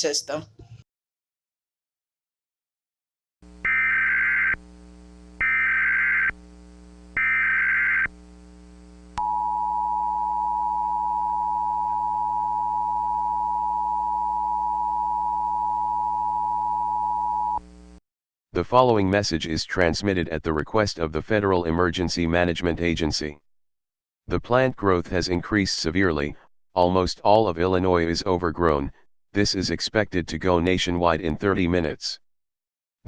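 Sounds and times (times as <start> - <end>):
faint low hum: 8.0 - 18.0.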